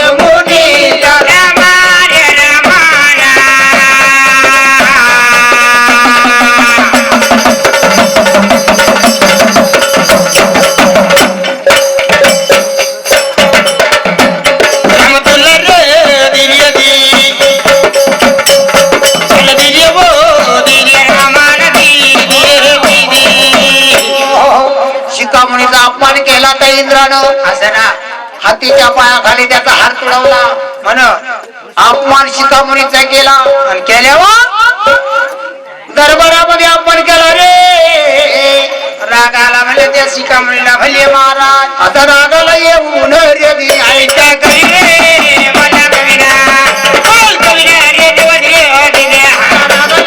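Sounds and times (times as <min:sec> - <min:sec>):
tabla-like drumming: 0:00.0 - 0:50.0.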